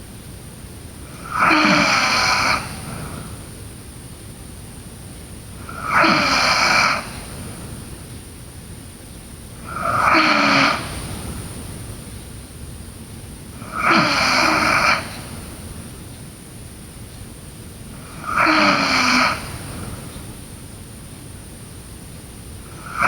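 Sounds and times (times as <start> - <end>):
girl snoring: 1.1 - 3.2, 5.6 - 7.2, 9.6 - 10.9, 13.6 - 15.4, 18.0 - 19.9, 22.8 - 23.0.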